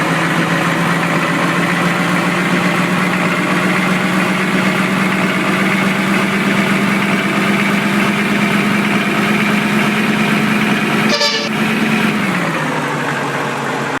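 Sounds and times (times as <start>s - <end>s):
engine running: 0.0s - 14.0s
musical vehicle horn tone: 11.0s - 11.8s.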